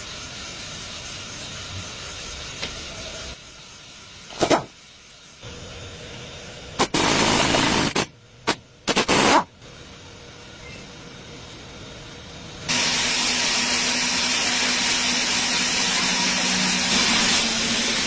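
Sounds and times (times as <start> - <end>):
pressurized spray hissing: 6.8 - 9.5, 12.7 - 18.0.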